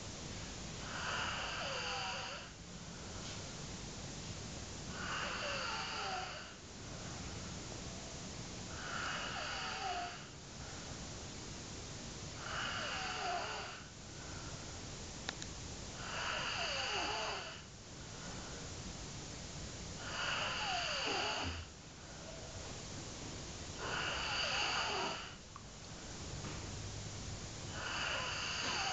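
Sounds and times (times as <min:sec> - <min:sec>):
man snoring with whistle: 0:00.9 - 0:02.5, 0:04.9 - 0:06.6, 0:08.7 - 0:10.3, 0:12.4 - 0:13.8, 0:16.0 - 0:17.7, 0:20.0 - 0:21.6, 0:23.8 - 0:25.4, 0:27.7 - 0:28.9.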